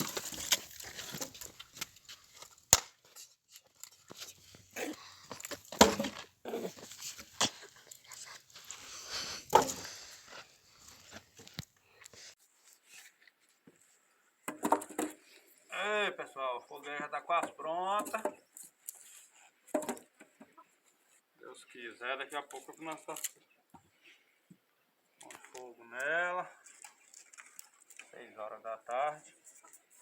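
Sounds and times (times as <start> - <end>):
wood knocking and cracking: 0.0 - 3.2, 5.3 - 7.9, 9.5 - 9.9
crunching and rustling brush: 0.0 - 13.2.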